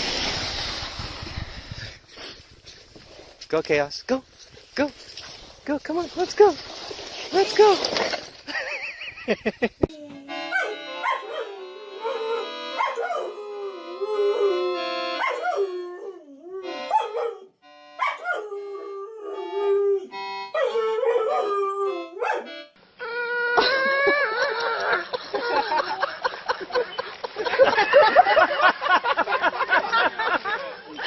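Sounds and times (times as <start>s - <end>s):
dog howling: 10.5s - 22.5s.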